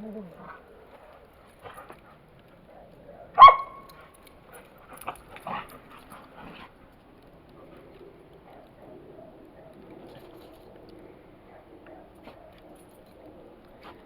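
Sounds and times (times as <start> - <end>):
dog barking: 2.7 - 3.9.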